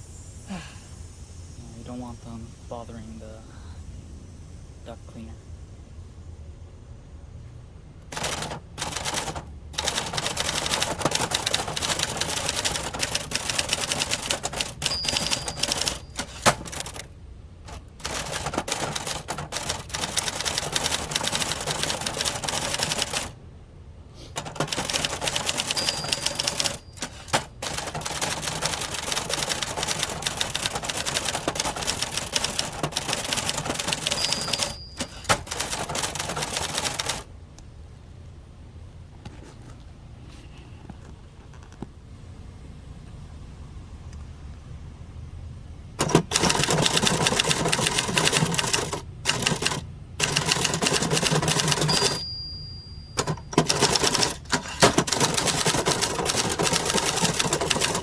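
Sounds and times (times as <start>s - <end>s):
manual typewriter typing: 8.1s - 17.1s, 17.7s - 23.4s, 24.3s - 37.3s, 46.0s - 58.0s
typewriter bell ding: 8.1s - 17.1s, 18.0s - 23.4s, 24.4s - 37.2s, 46.0s - 58.0s.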